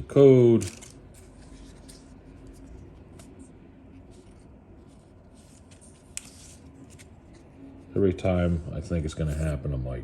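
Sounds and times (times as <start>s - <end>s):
trading cards rustling and sliding: 0.6s - 7.6s.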